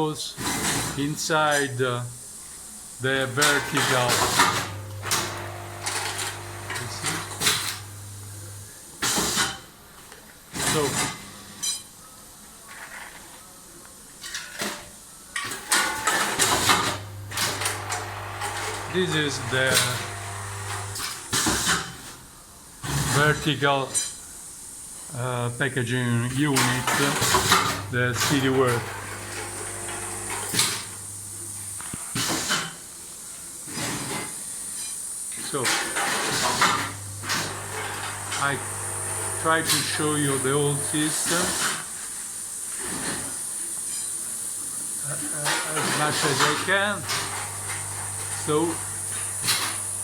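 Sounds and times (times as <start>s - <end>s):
packaging machinery running: 3.4s - 9.6s, 10.5s - 11.4s, 15.5s - 22.2s, 26.4s - 32.7s, 33.7s - 34.4s, 35.4s - 42.0s, 45.0s - 50.0s
short hissing bursts: 29.4s - 47.2s.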